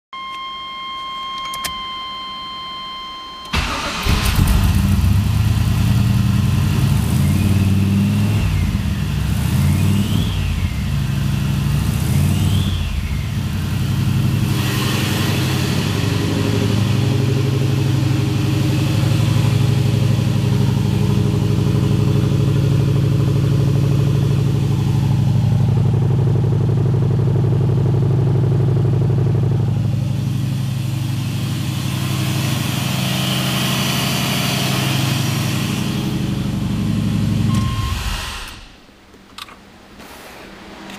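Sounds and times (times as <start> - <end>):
car engine revving: 3.6 - 38.8
turbo whine: 7.0 - 38.8
electronic tone: 37.4 - 38.6.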